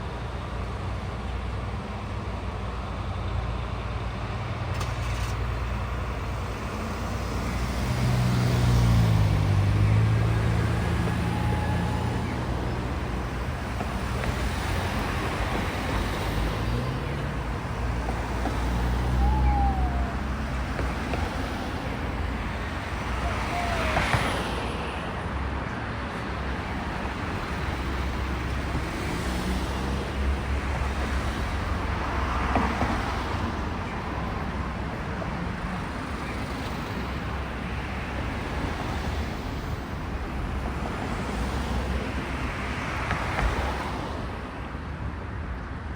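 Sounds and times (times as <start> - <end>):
locomotive engine drone: 0.0 - 44.7
high squeals: 9.7 - 24.4.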